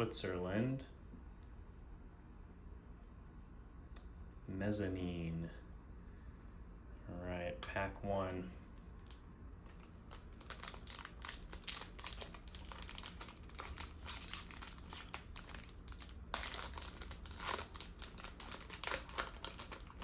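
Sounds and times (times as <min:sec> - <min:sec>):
wrapper tearing and crinkling: 0:09.7 - 0:20.0.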